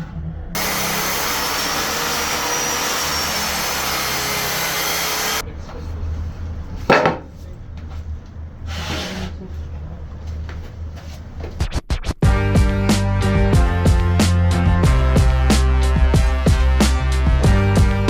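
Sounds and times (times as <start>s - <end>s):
power tool rasping wood: 0.6s - 5.4s
loud scrape: 8.7s - 9.3s.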